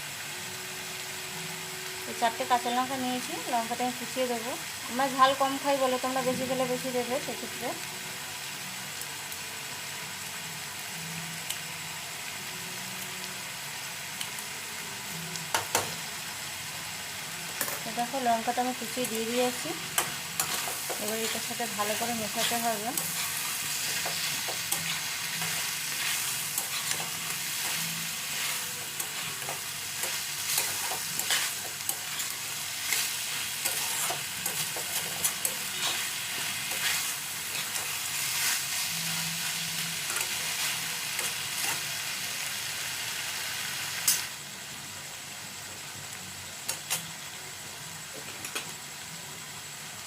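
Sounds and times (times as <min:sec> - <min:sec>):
food sizzling in a pan: 0:00.0 - 0:50.0
spatula scraping a pan: 0:22.4 - 0:38.9.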